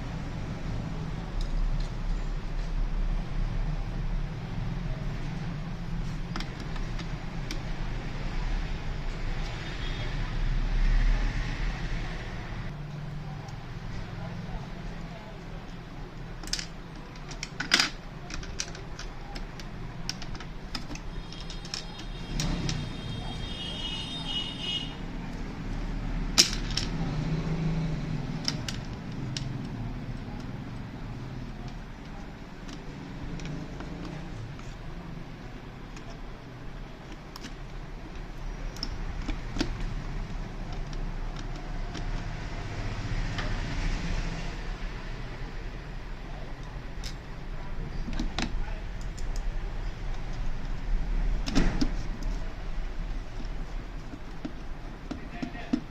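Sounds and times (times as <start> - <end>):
plastic parts clicking: 15.6 - 22.8, 28.2 - 43.5, 46.6 - 55.9
printer parts clicking: 15.6 - 24.8.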